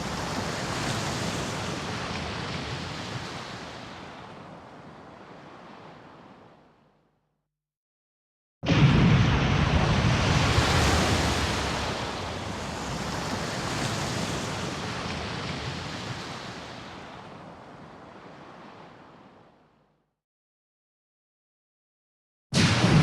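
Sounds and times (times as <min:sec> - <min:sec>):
heavy rushing crash with rumble: 0:08.7 - 0:12.5, 0:22.6 - 0:23.0.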